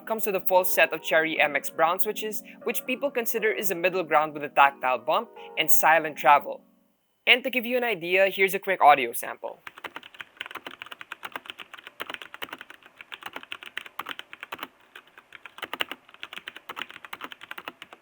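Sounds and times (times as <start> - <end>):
mechanical keyboard typing: 9.6 - 18.0.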